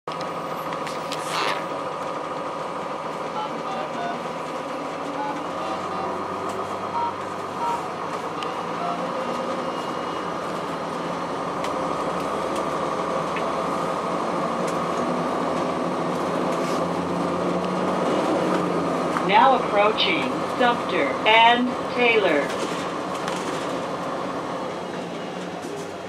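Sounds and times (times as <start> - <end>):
bus diesel engine running: 0.1 - 26.0
short electronic beeps: 3.4 - 4.2, 5.2 - 6.0, 6.9 - 10.3.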